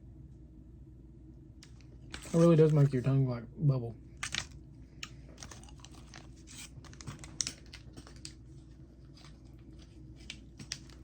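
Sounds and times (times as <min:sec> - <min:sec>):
candy crunching while chewed: 0:04.2 - 0:11.0.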